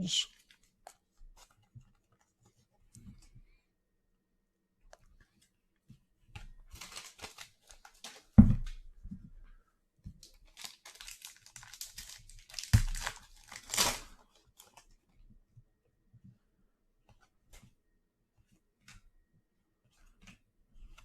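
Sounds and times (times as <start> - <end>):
foil wrapper crinkling and tearing: 0.3 - 1.0, 6.7 - 8.4, 10.3 - 14.8.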